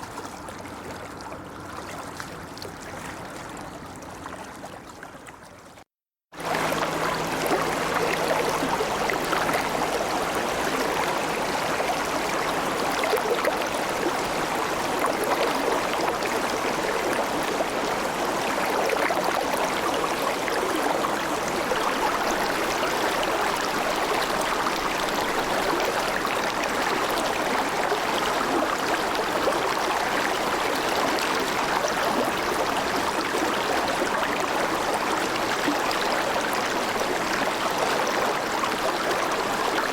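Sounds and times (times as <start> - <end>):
shallow river murmuring: 0.0 - 5.8, 6.4 - 39.9.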